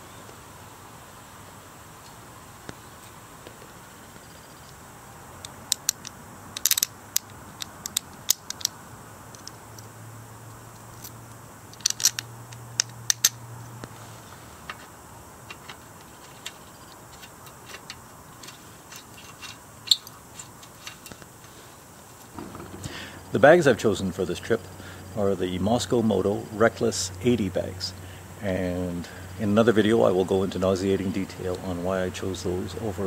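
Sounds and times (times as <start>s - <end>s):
faint low hum: 0.0s - 33.0s
metallic clicks of tools: 5.4s - 9.6s, 10.8s - 13.4s.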